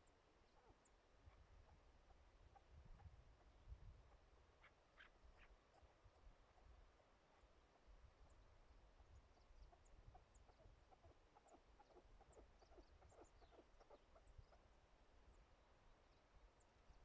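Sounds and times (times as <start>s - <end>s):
bird clucking notes: 10.1s - 14.6s.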